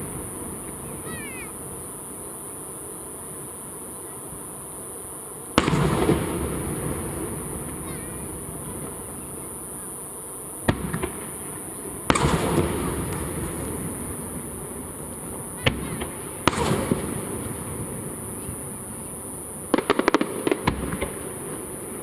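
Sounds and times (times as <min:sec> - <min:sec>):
fireworks crackling pops: 0:00.0 - 0:22.0
fireworks shells bursting: 0:05.6 - 0:22.0.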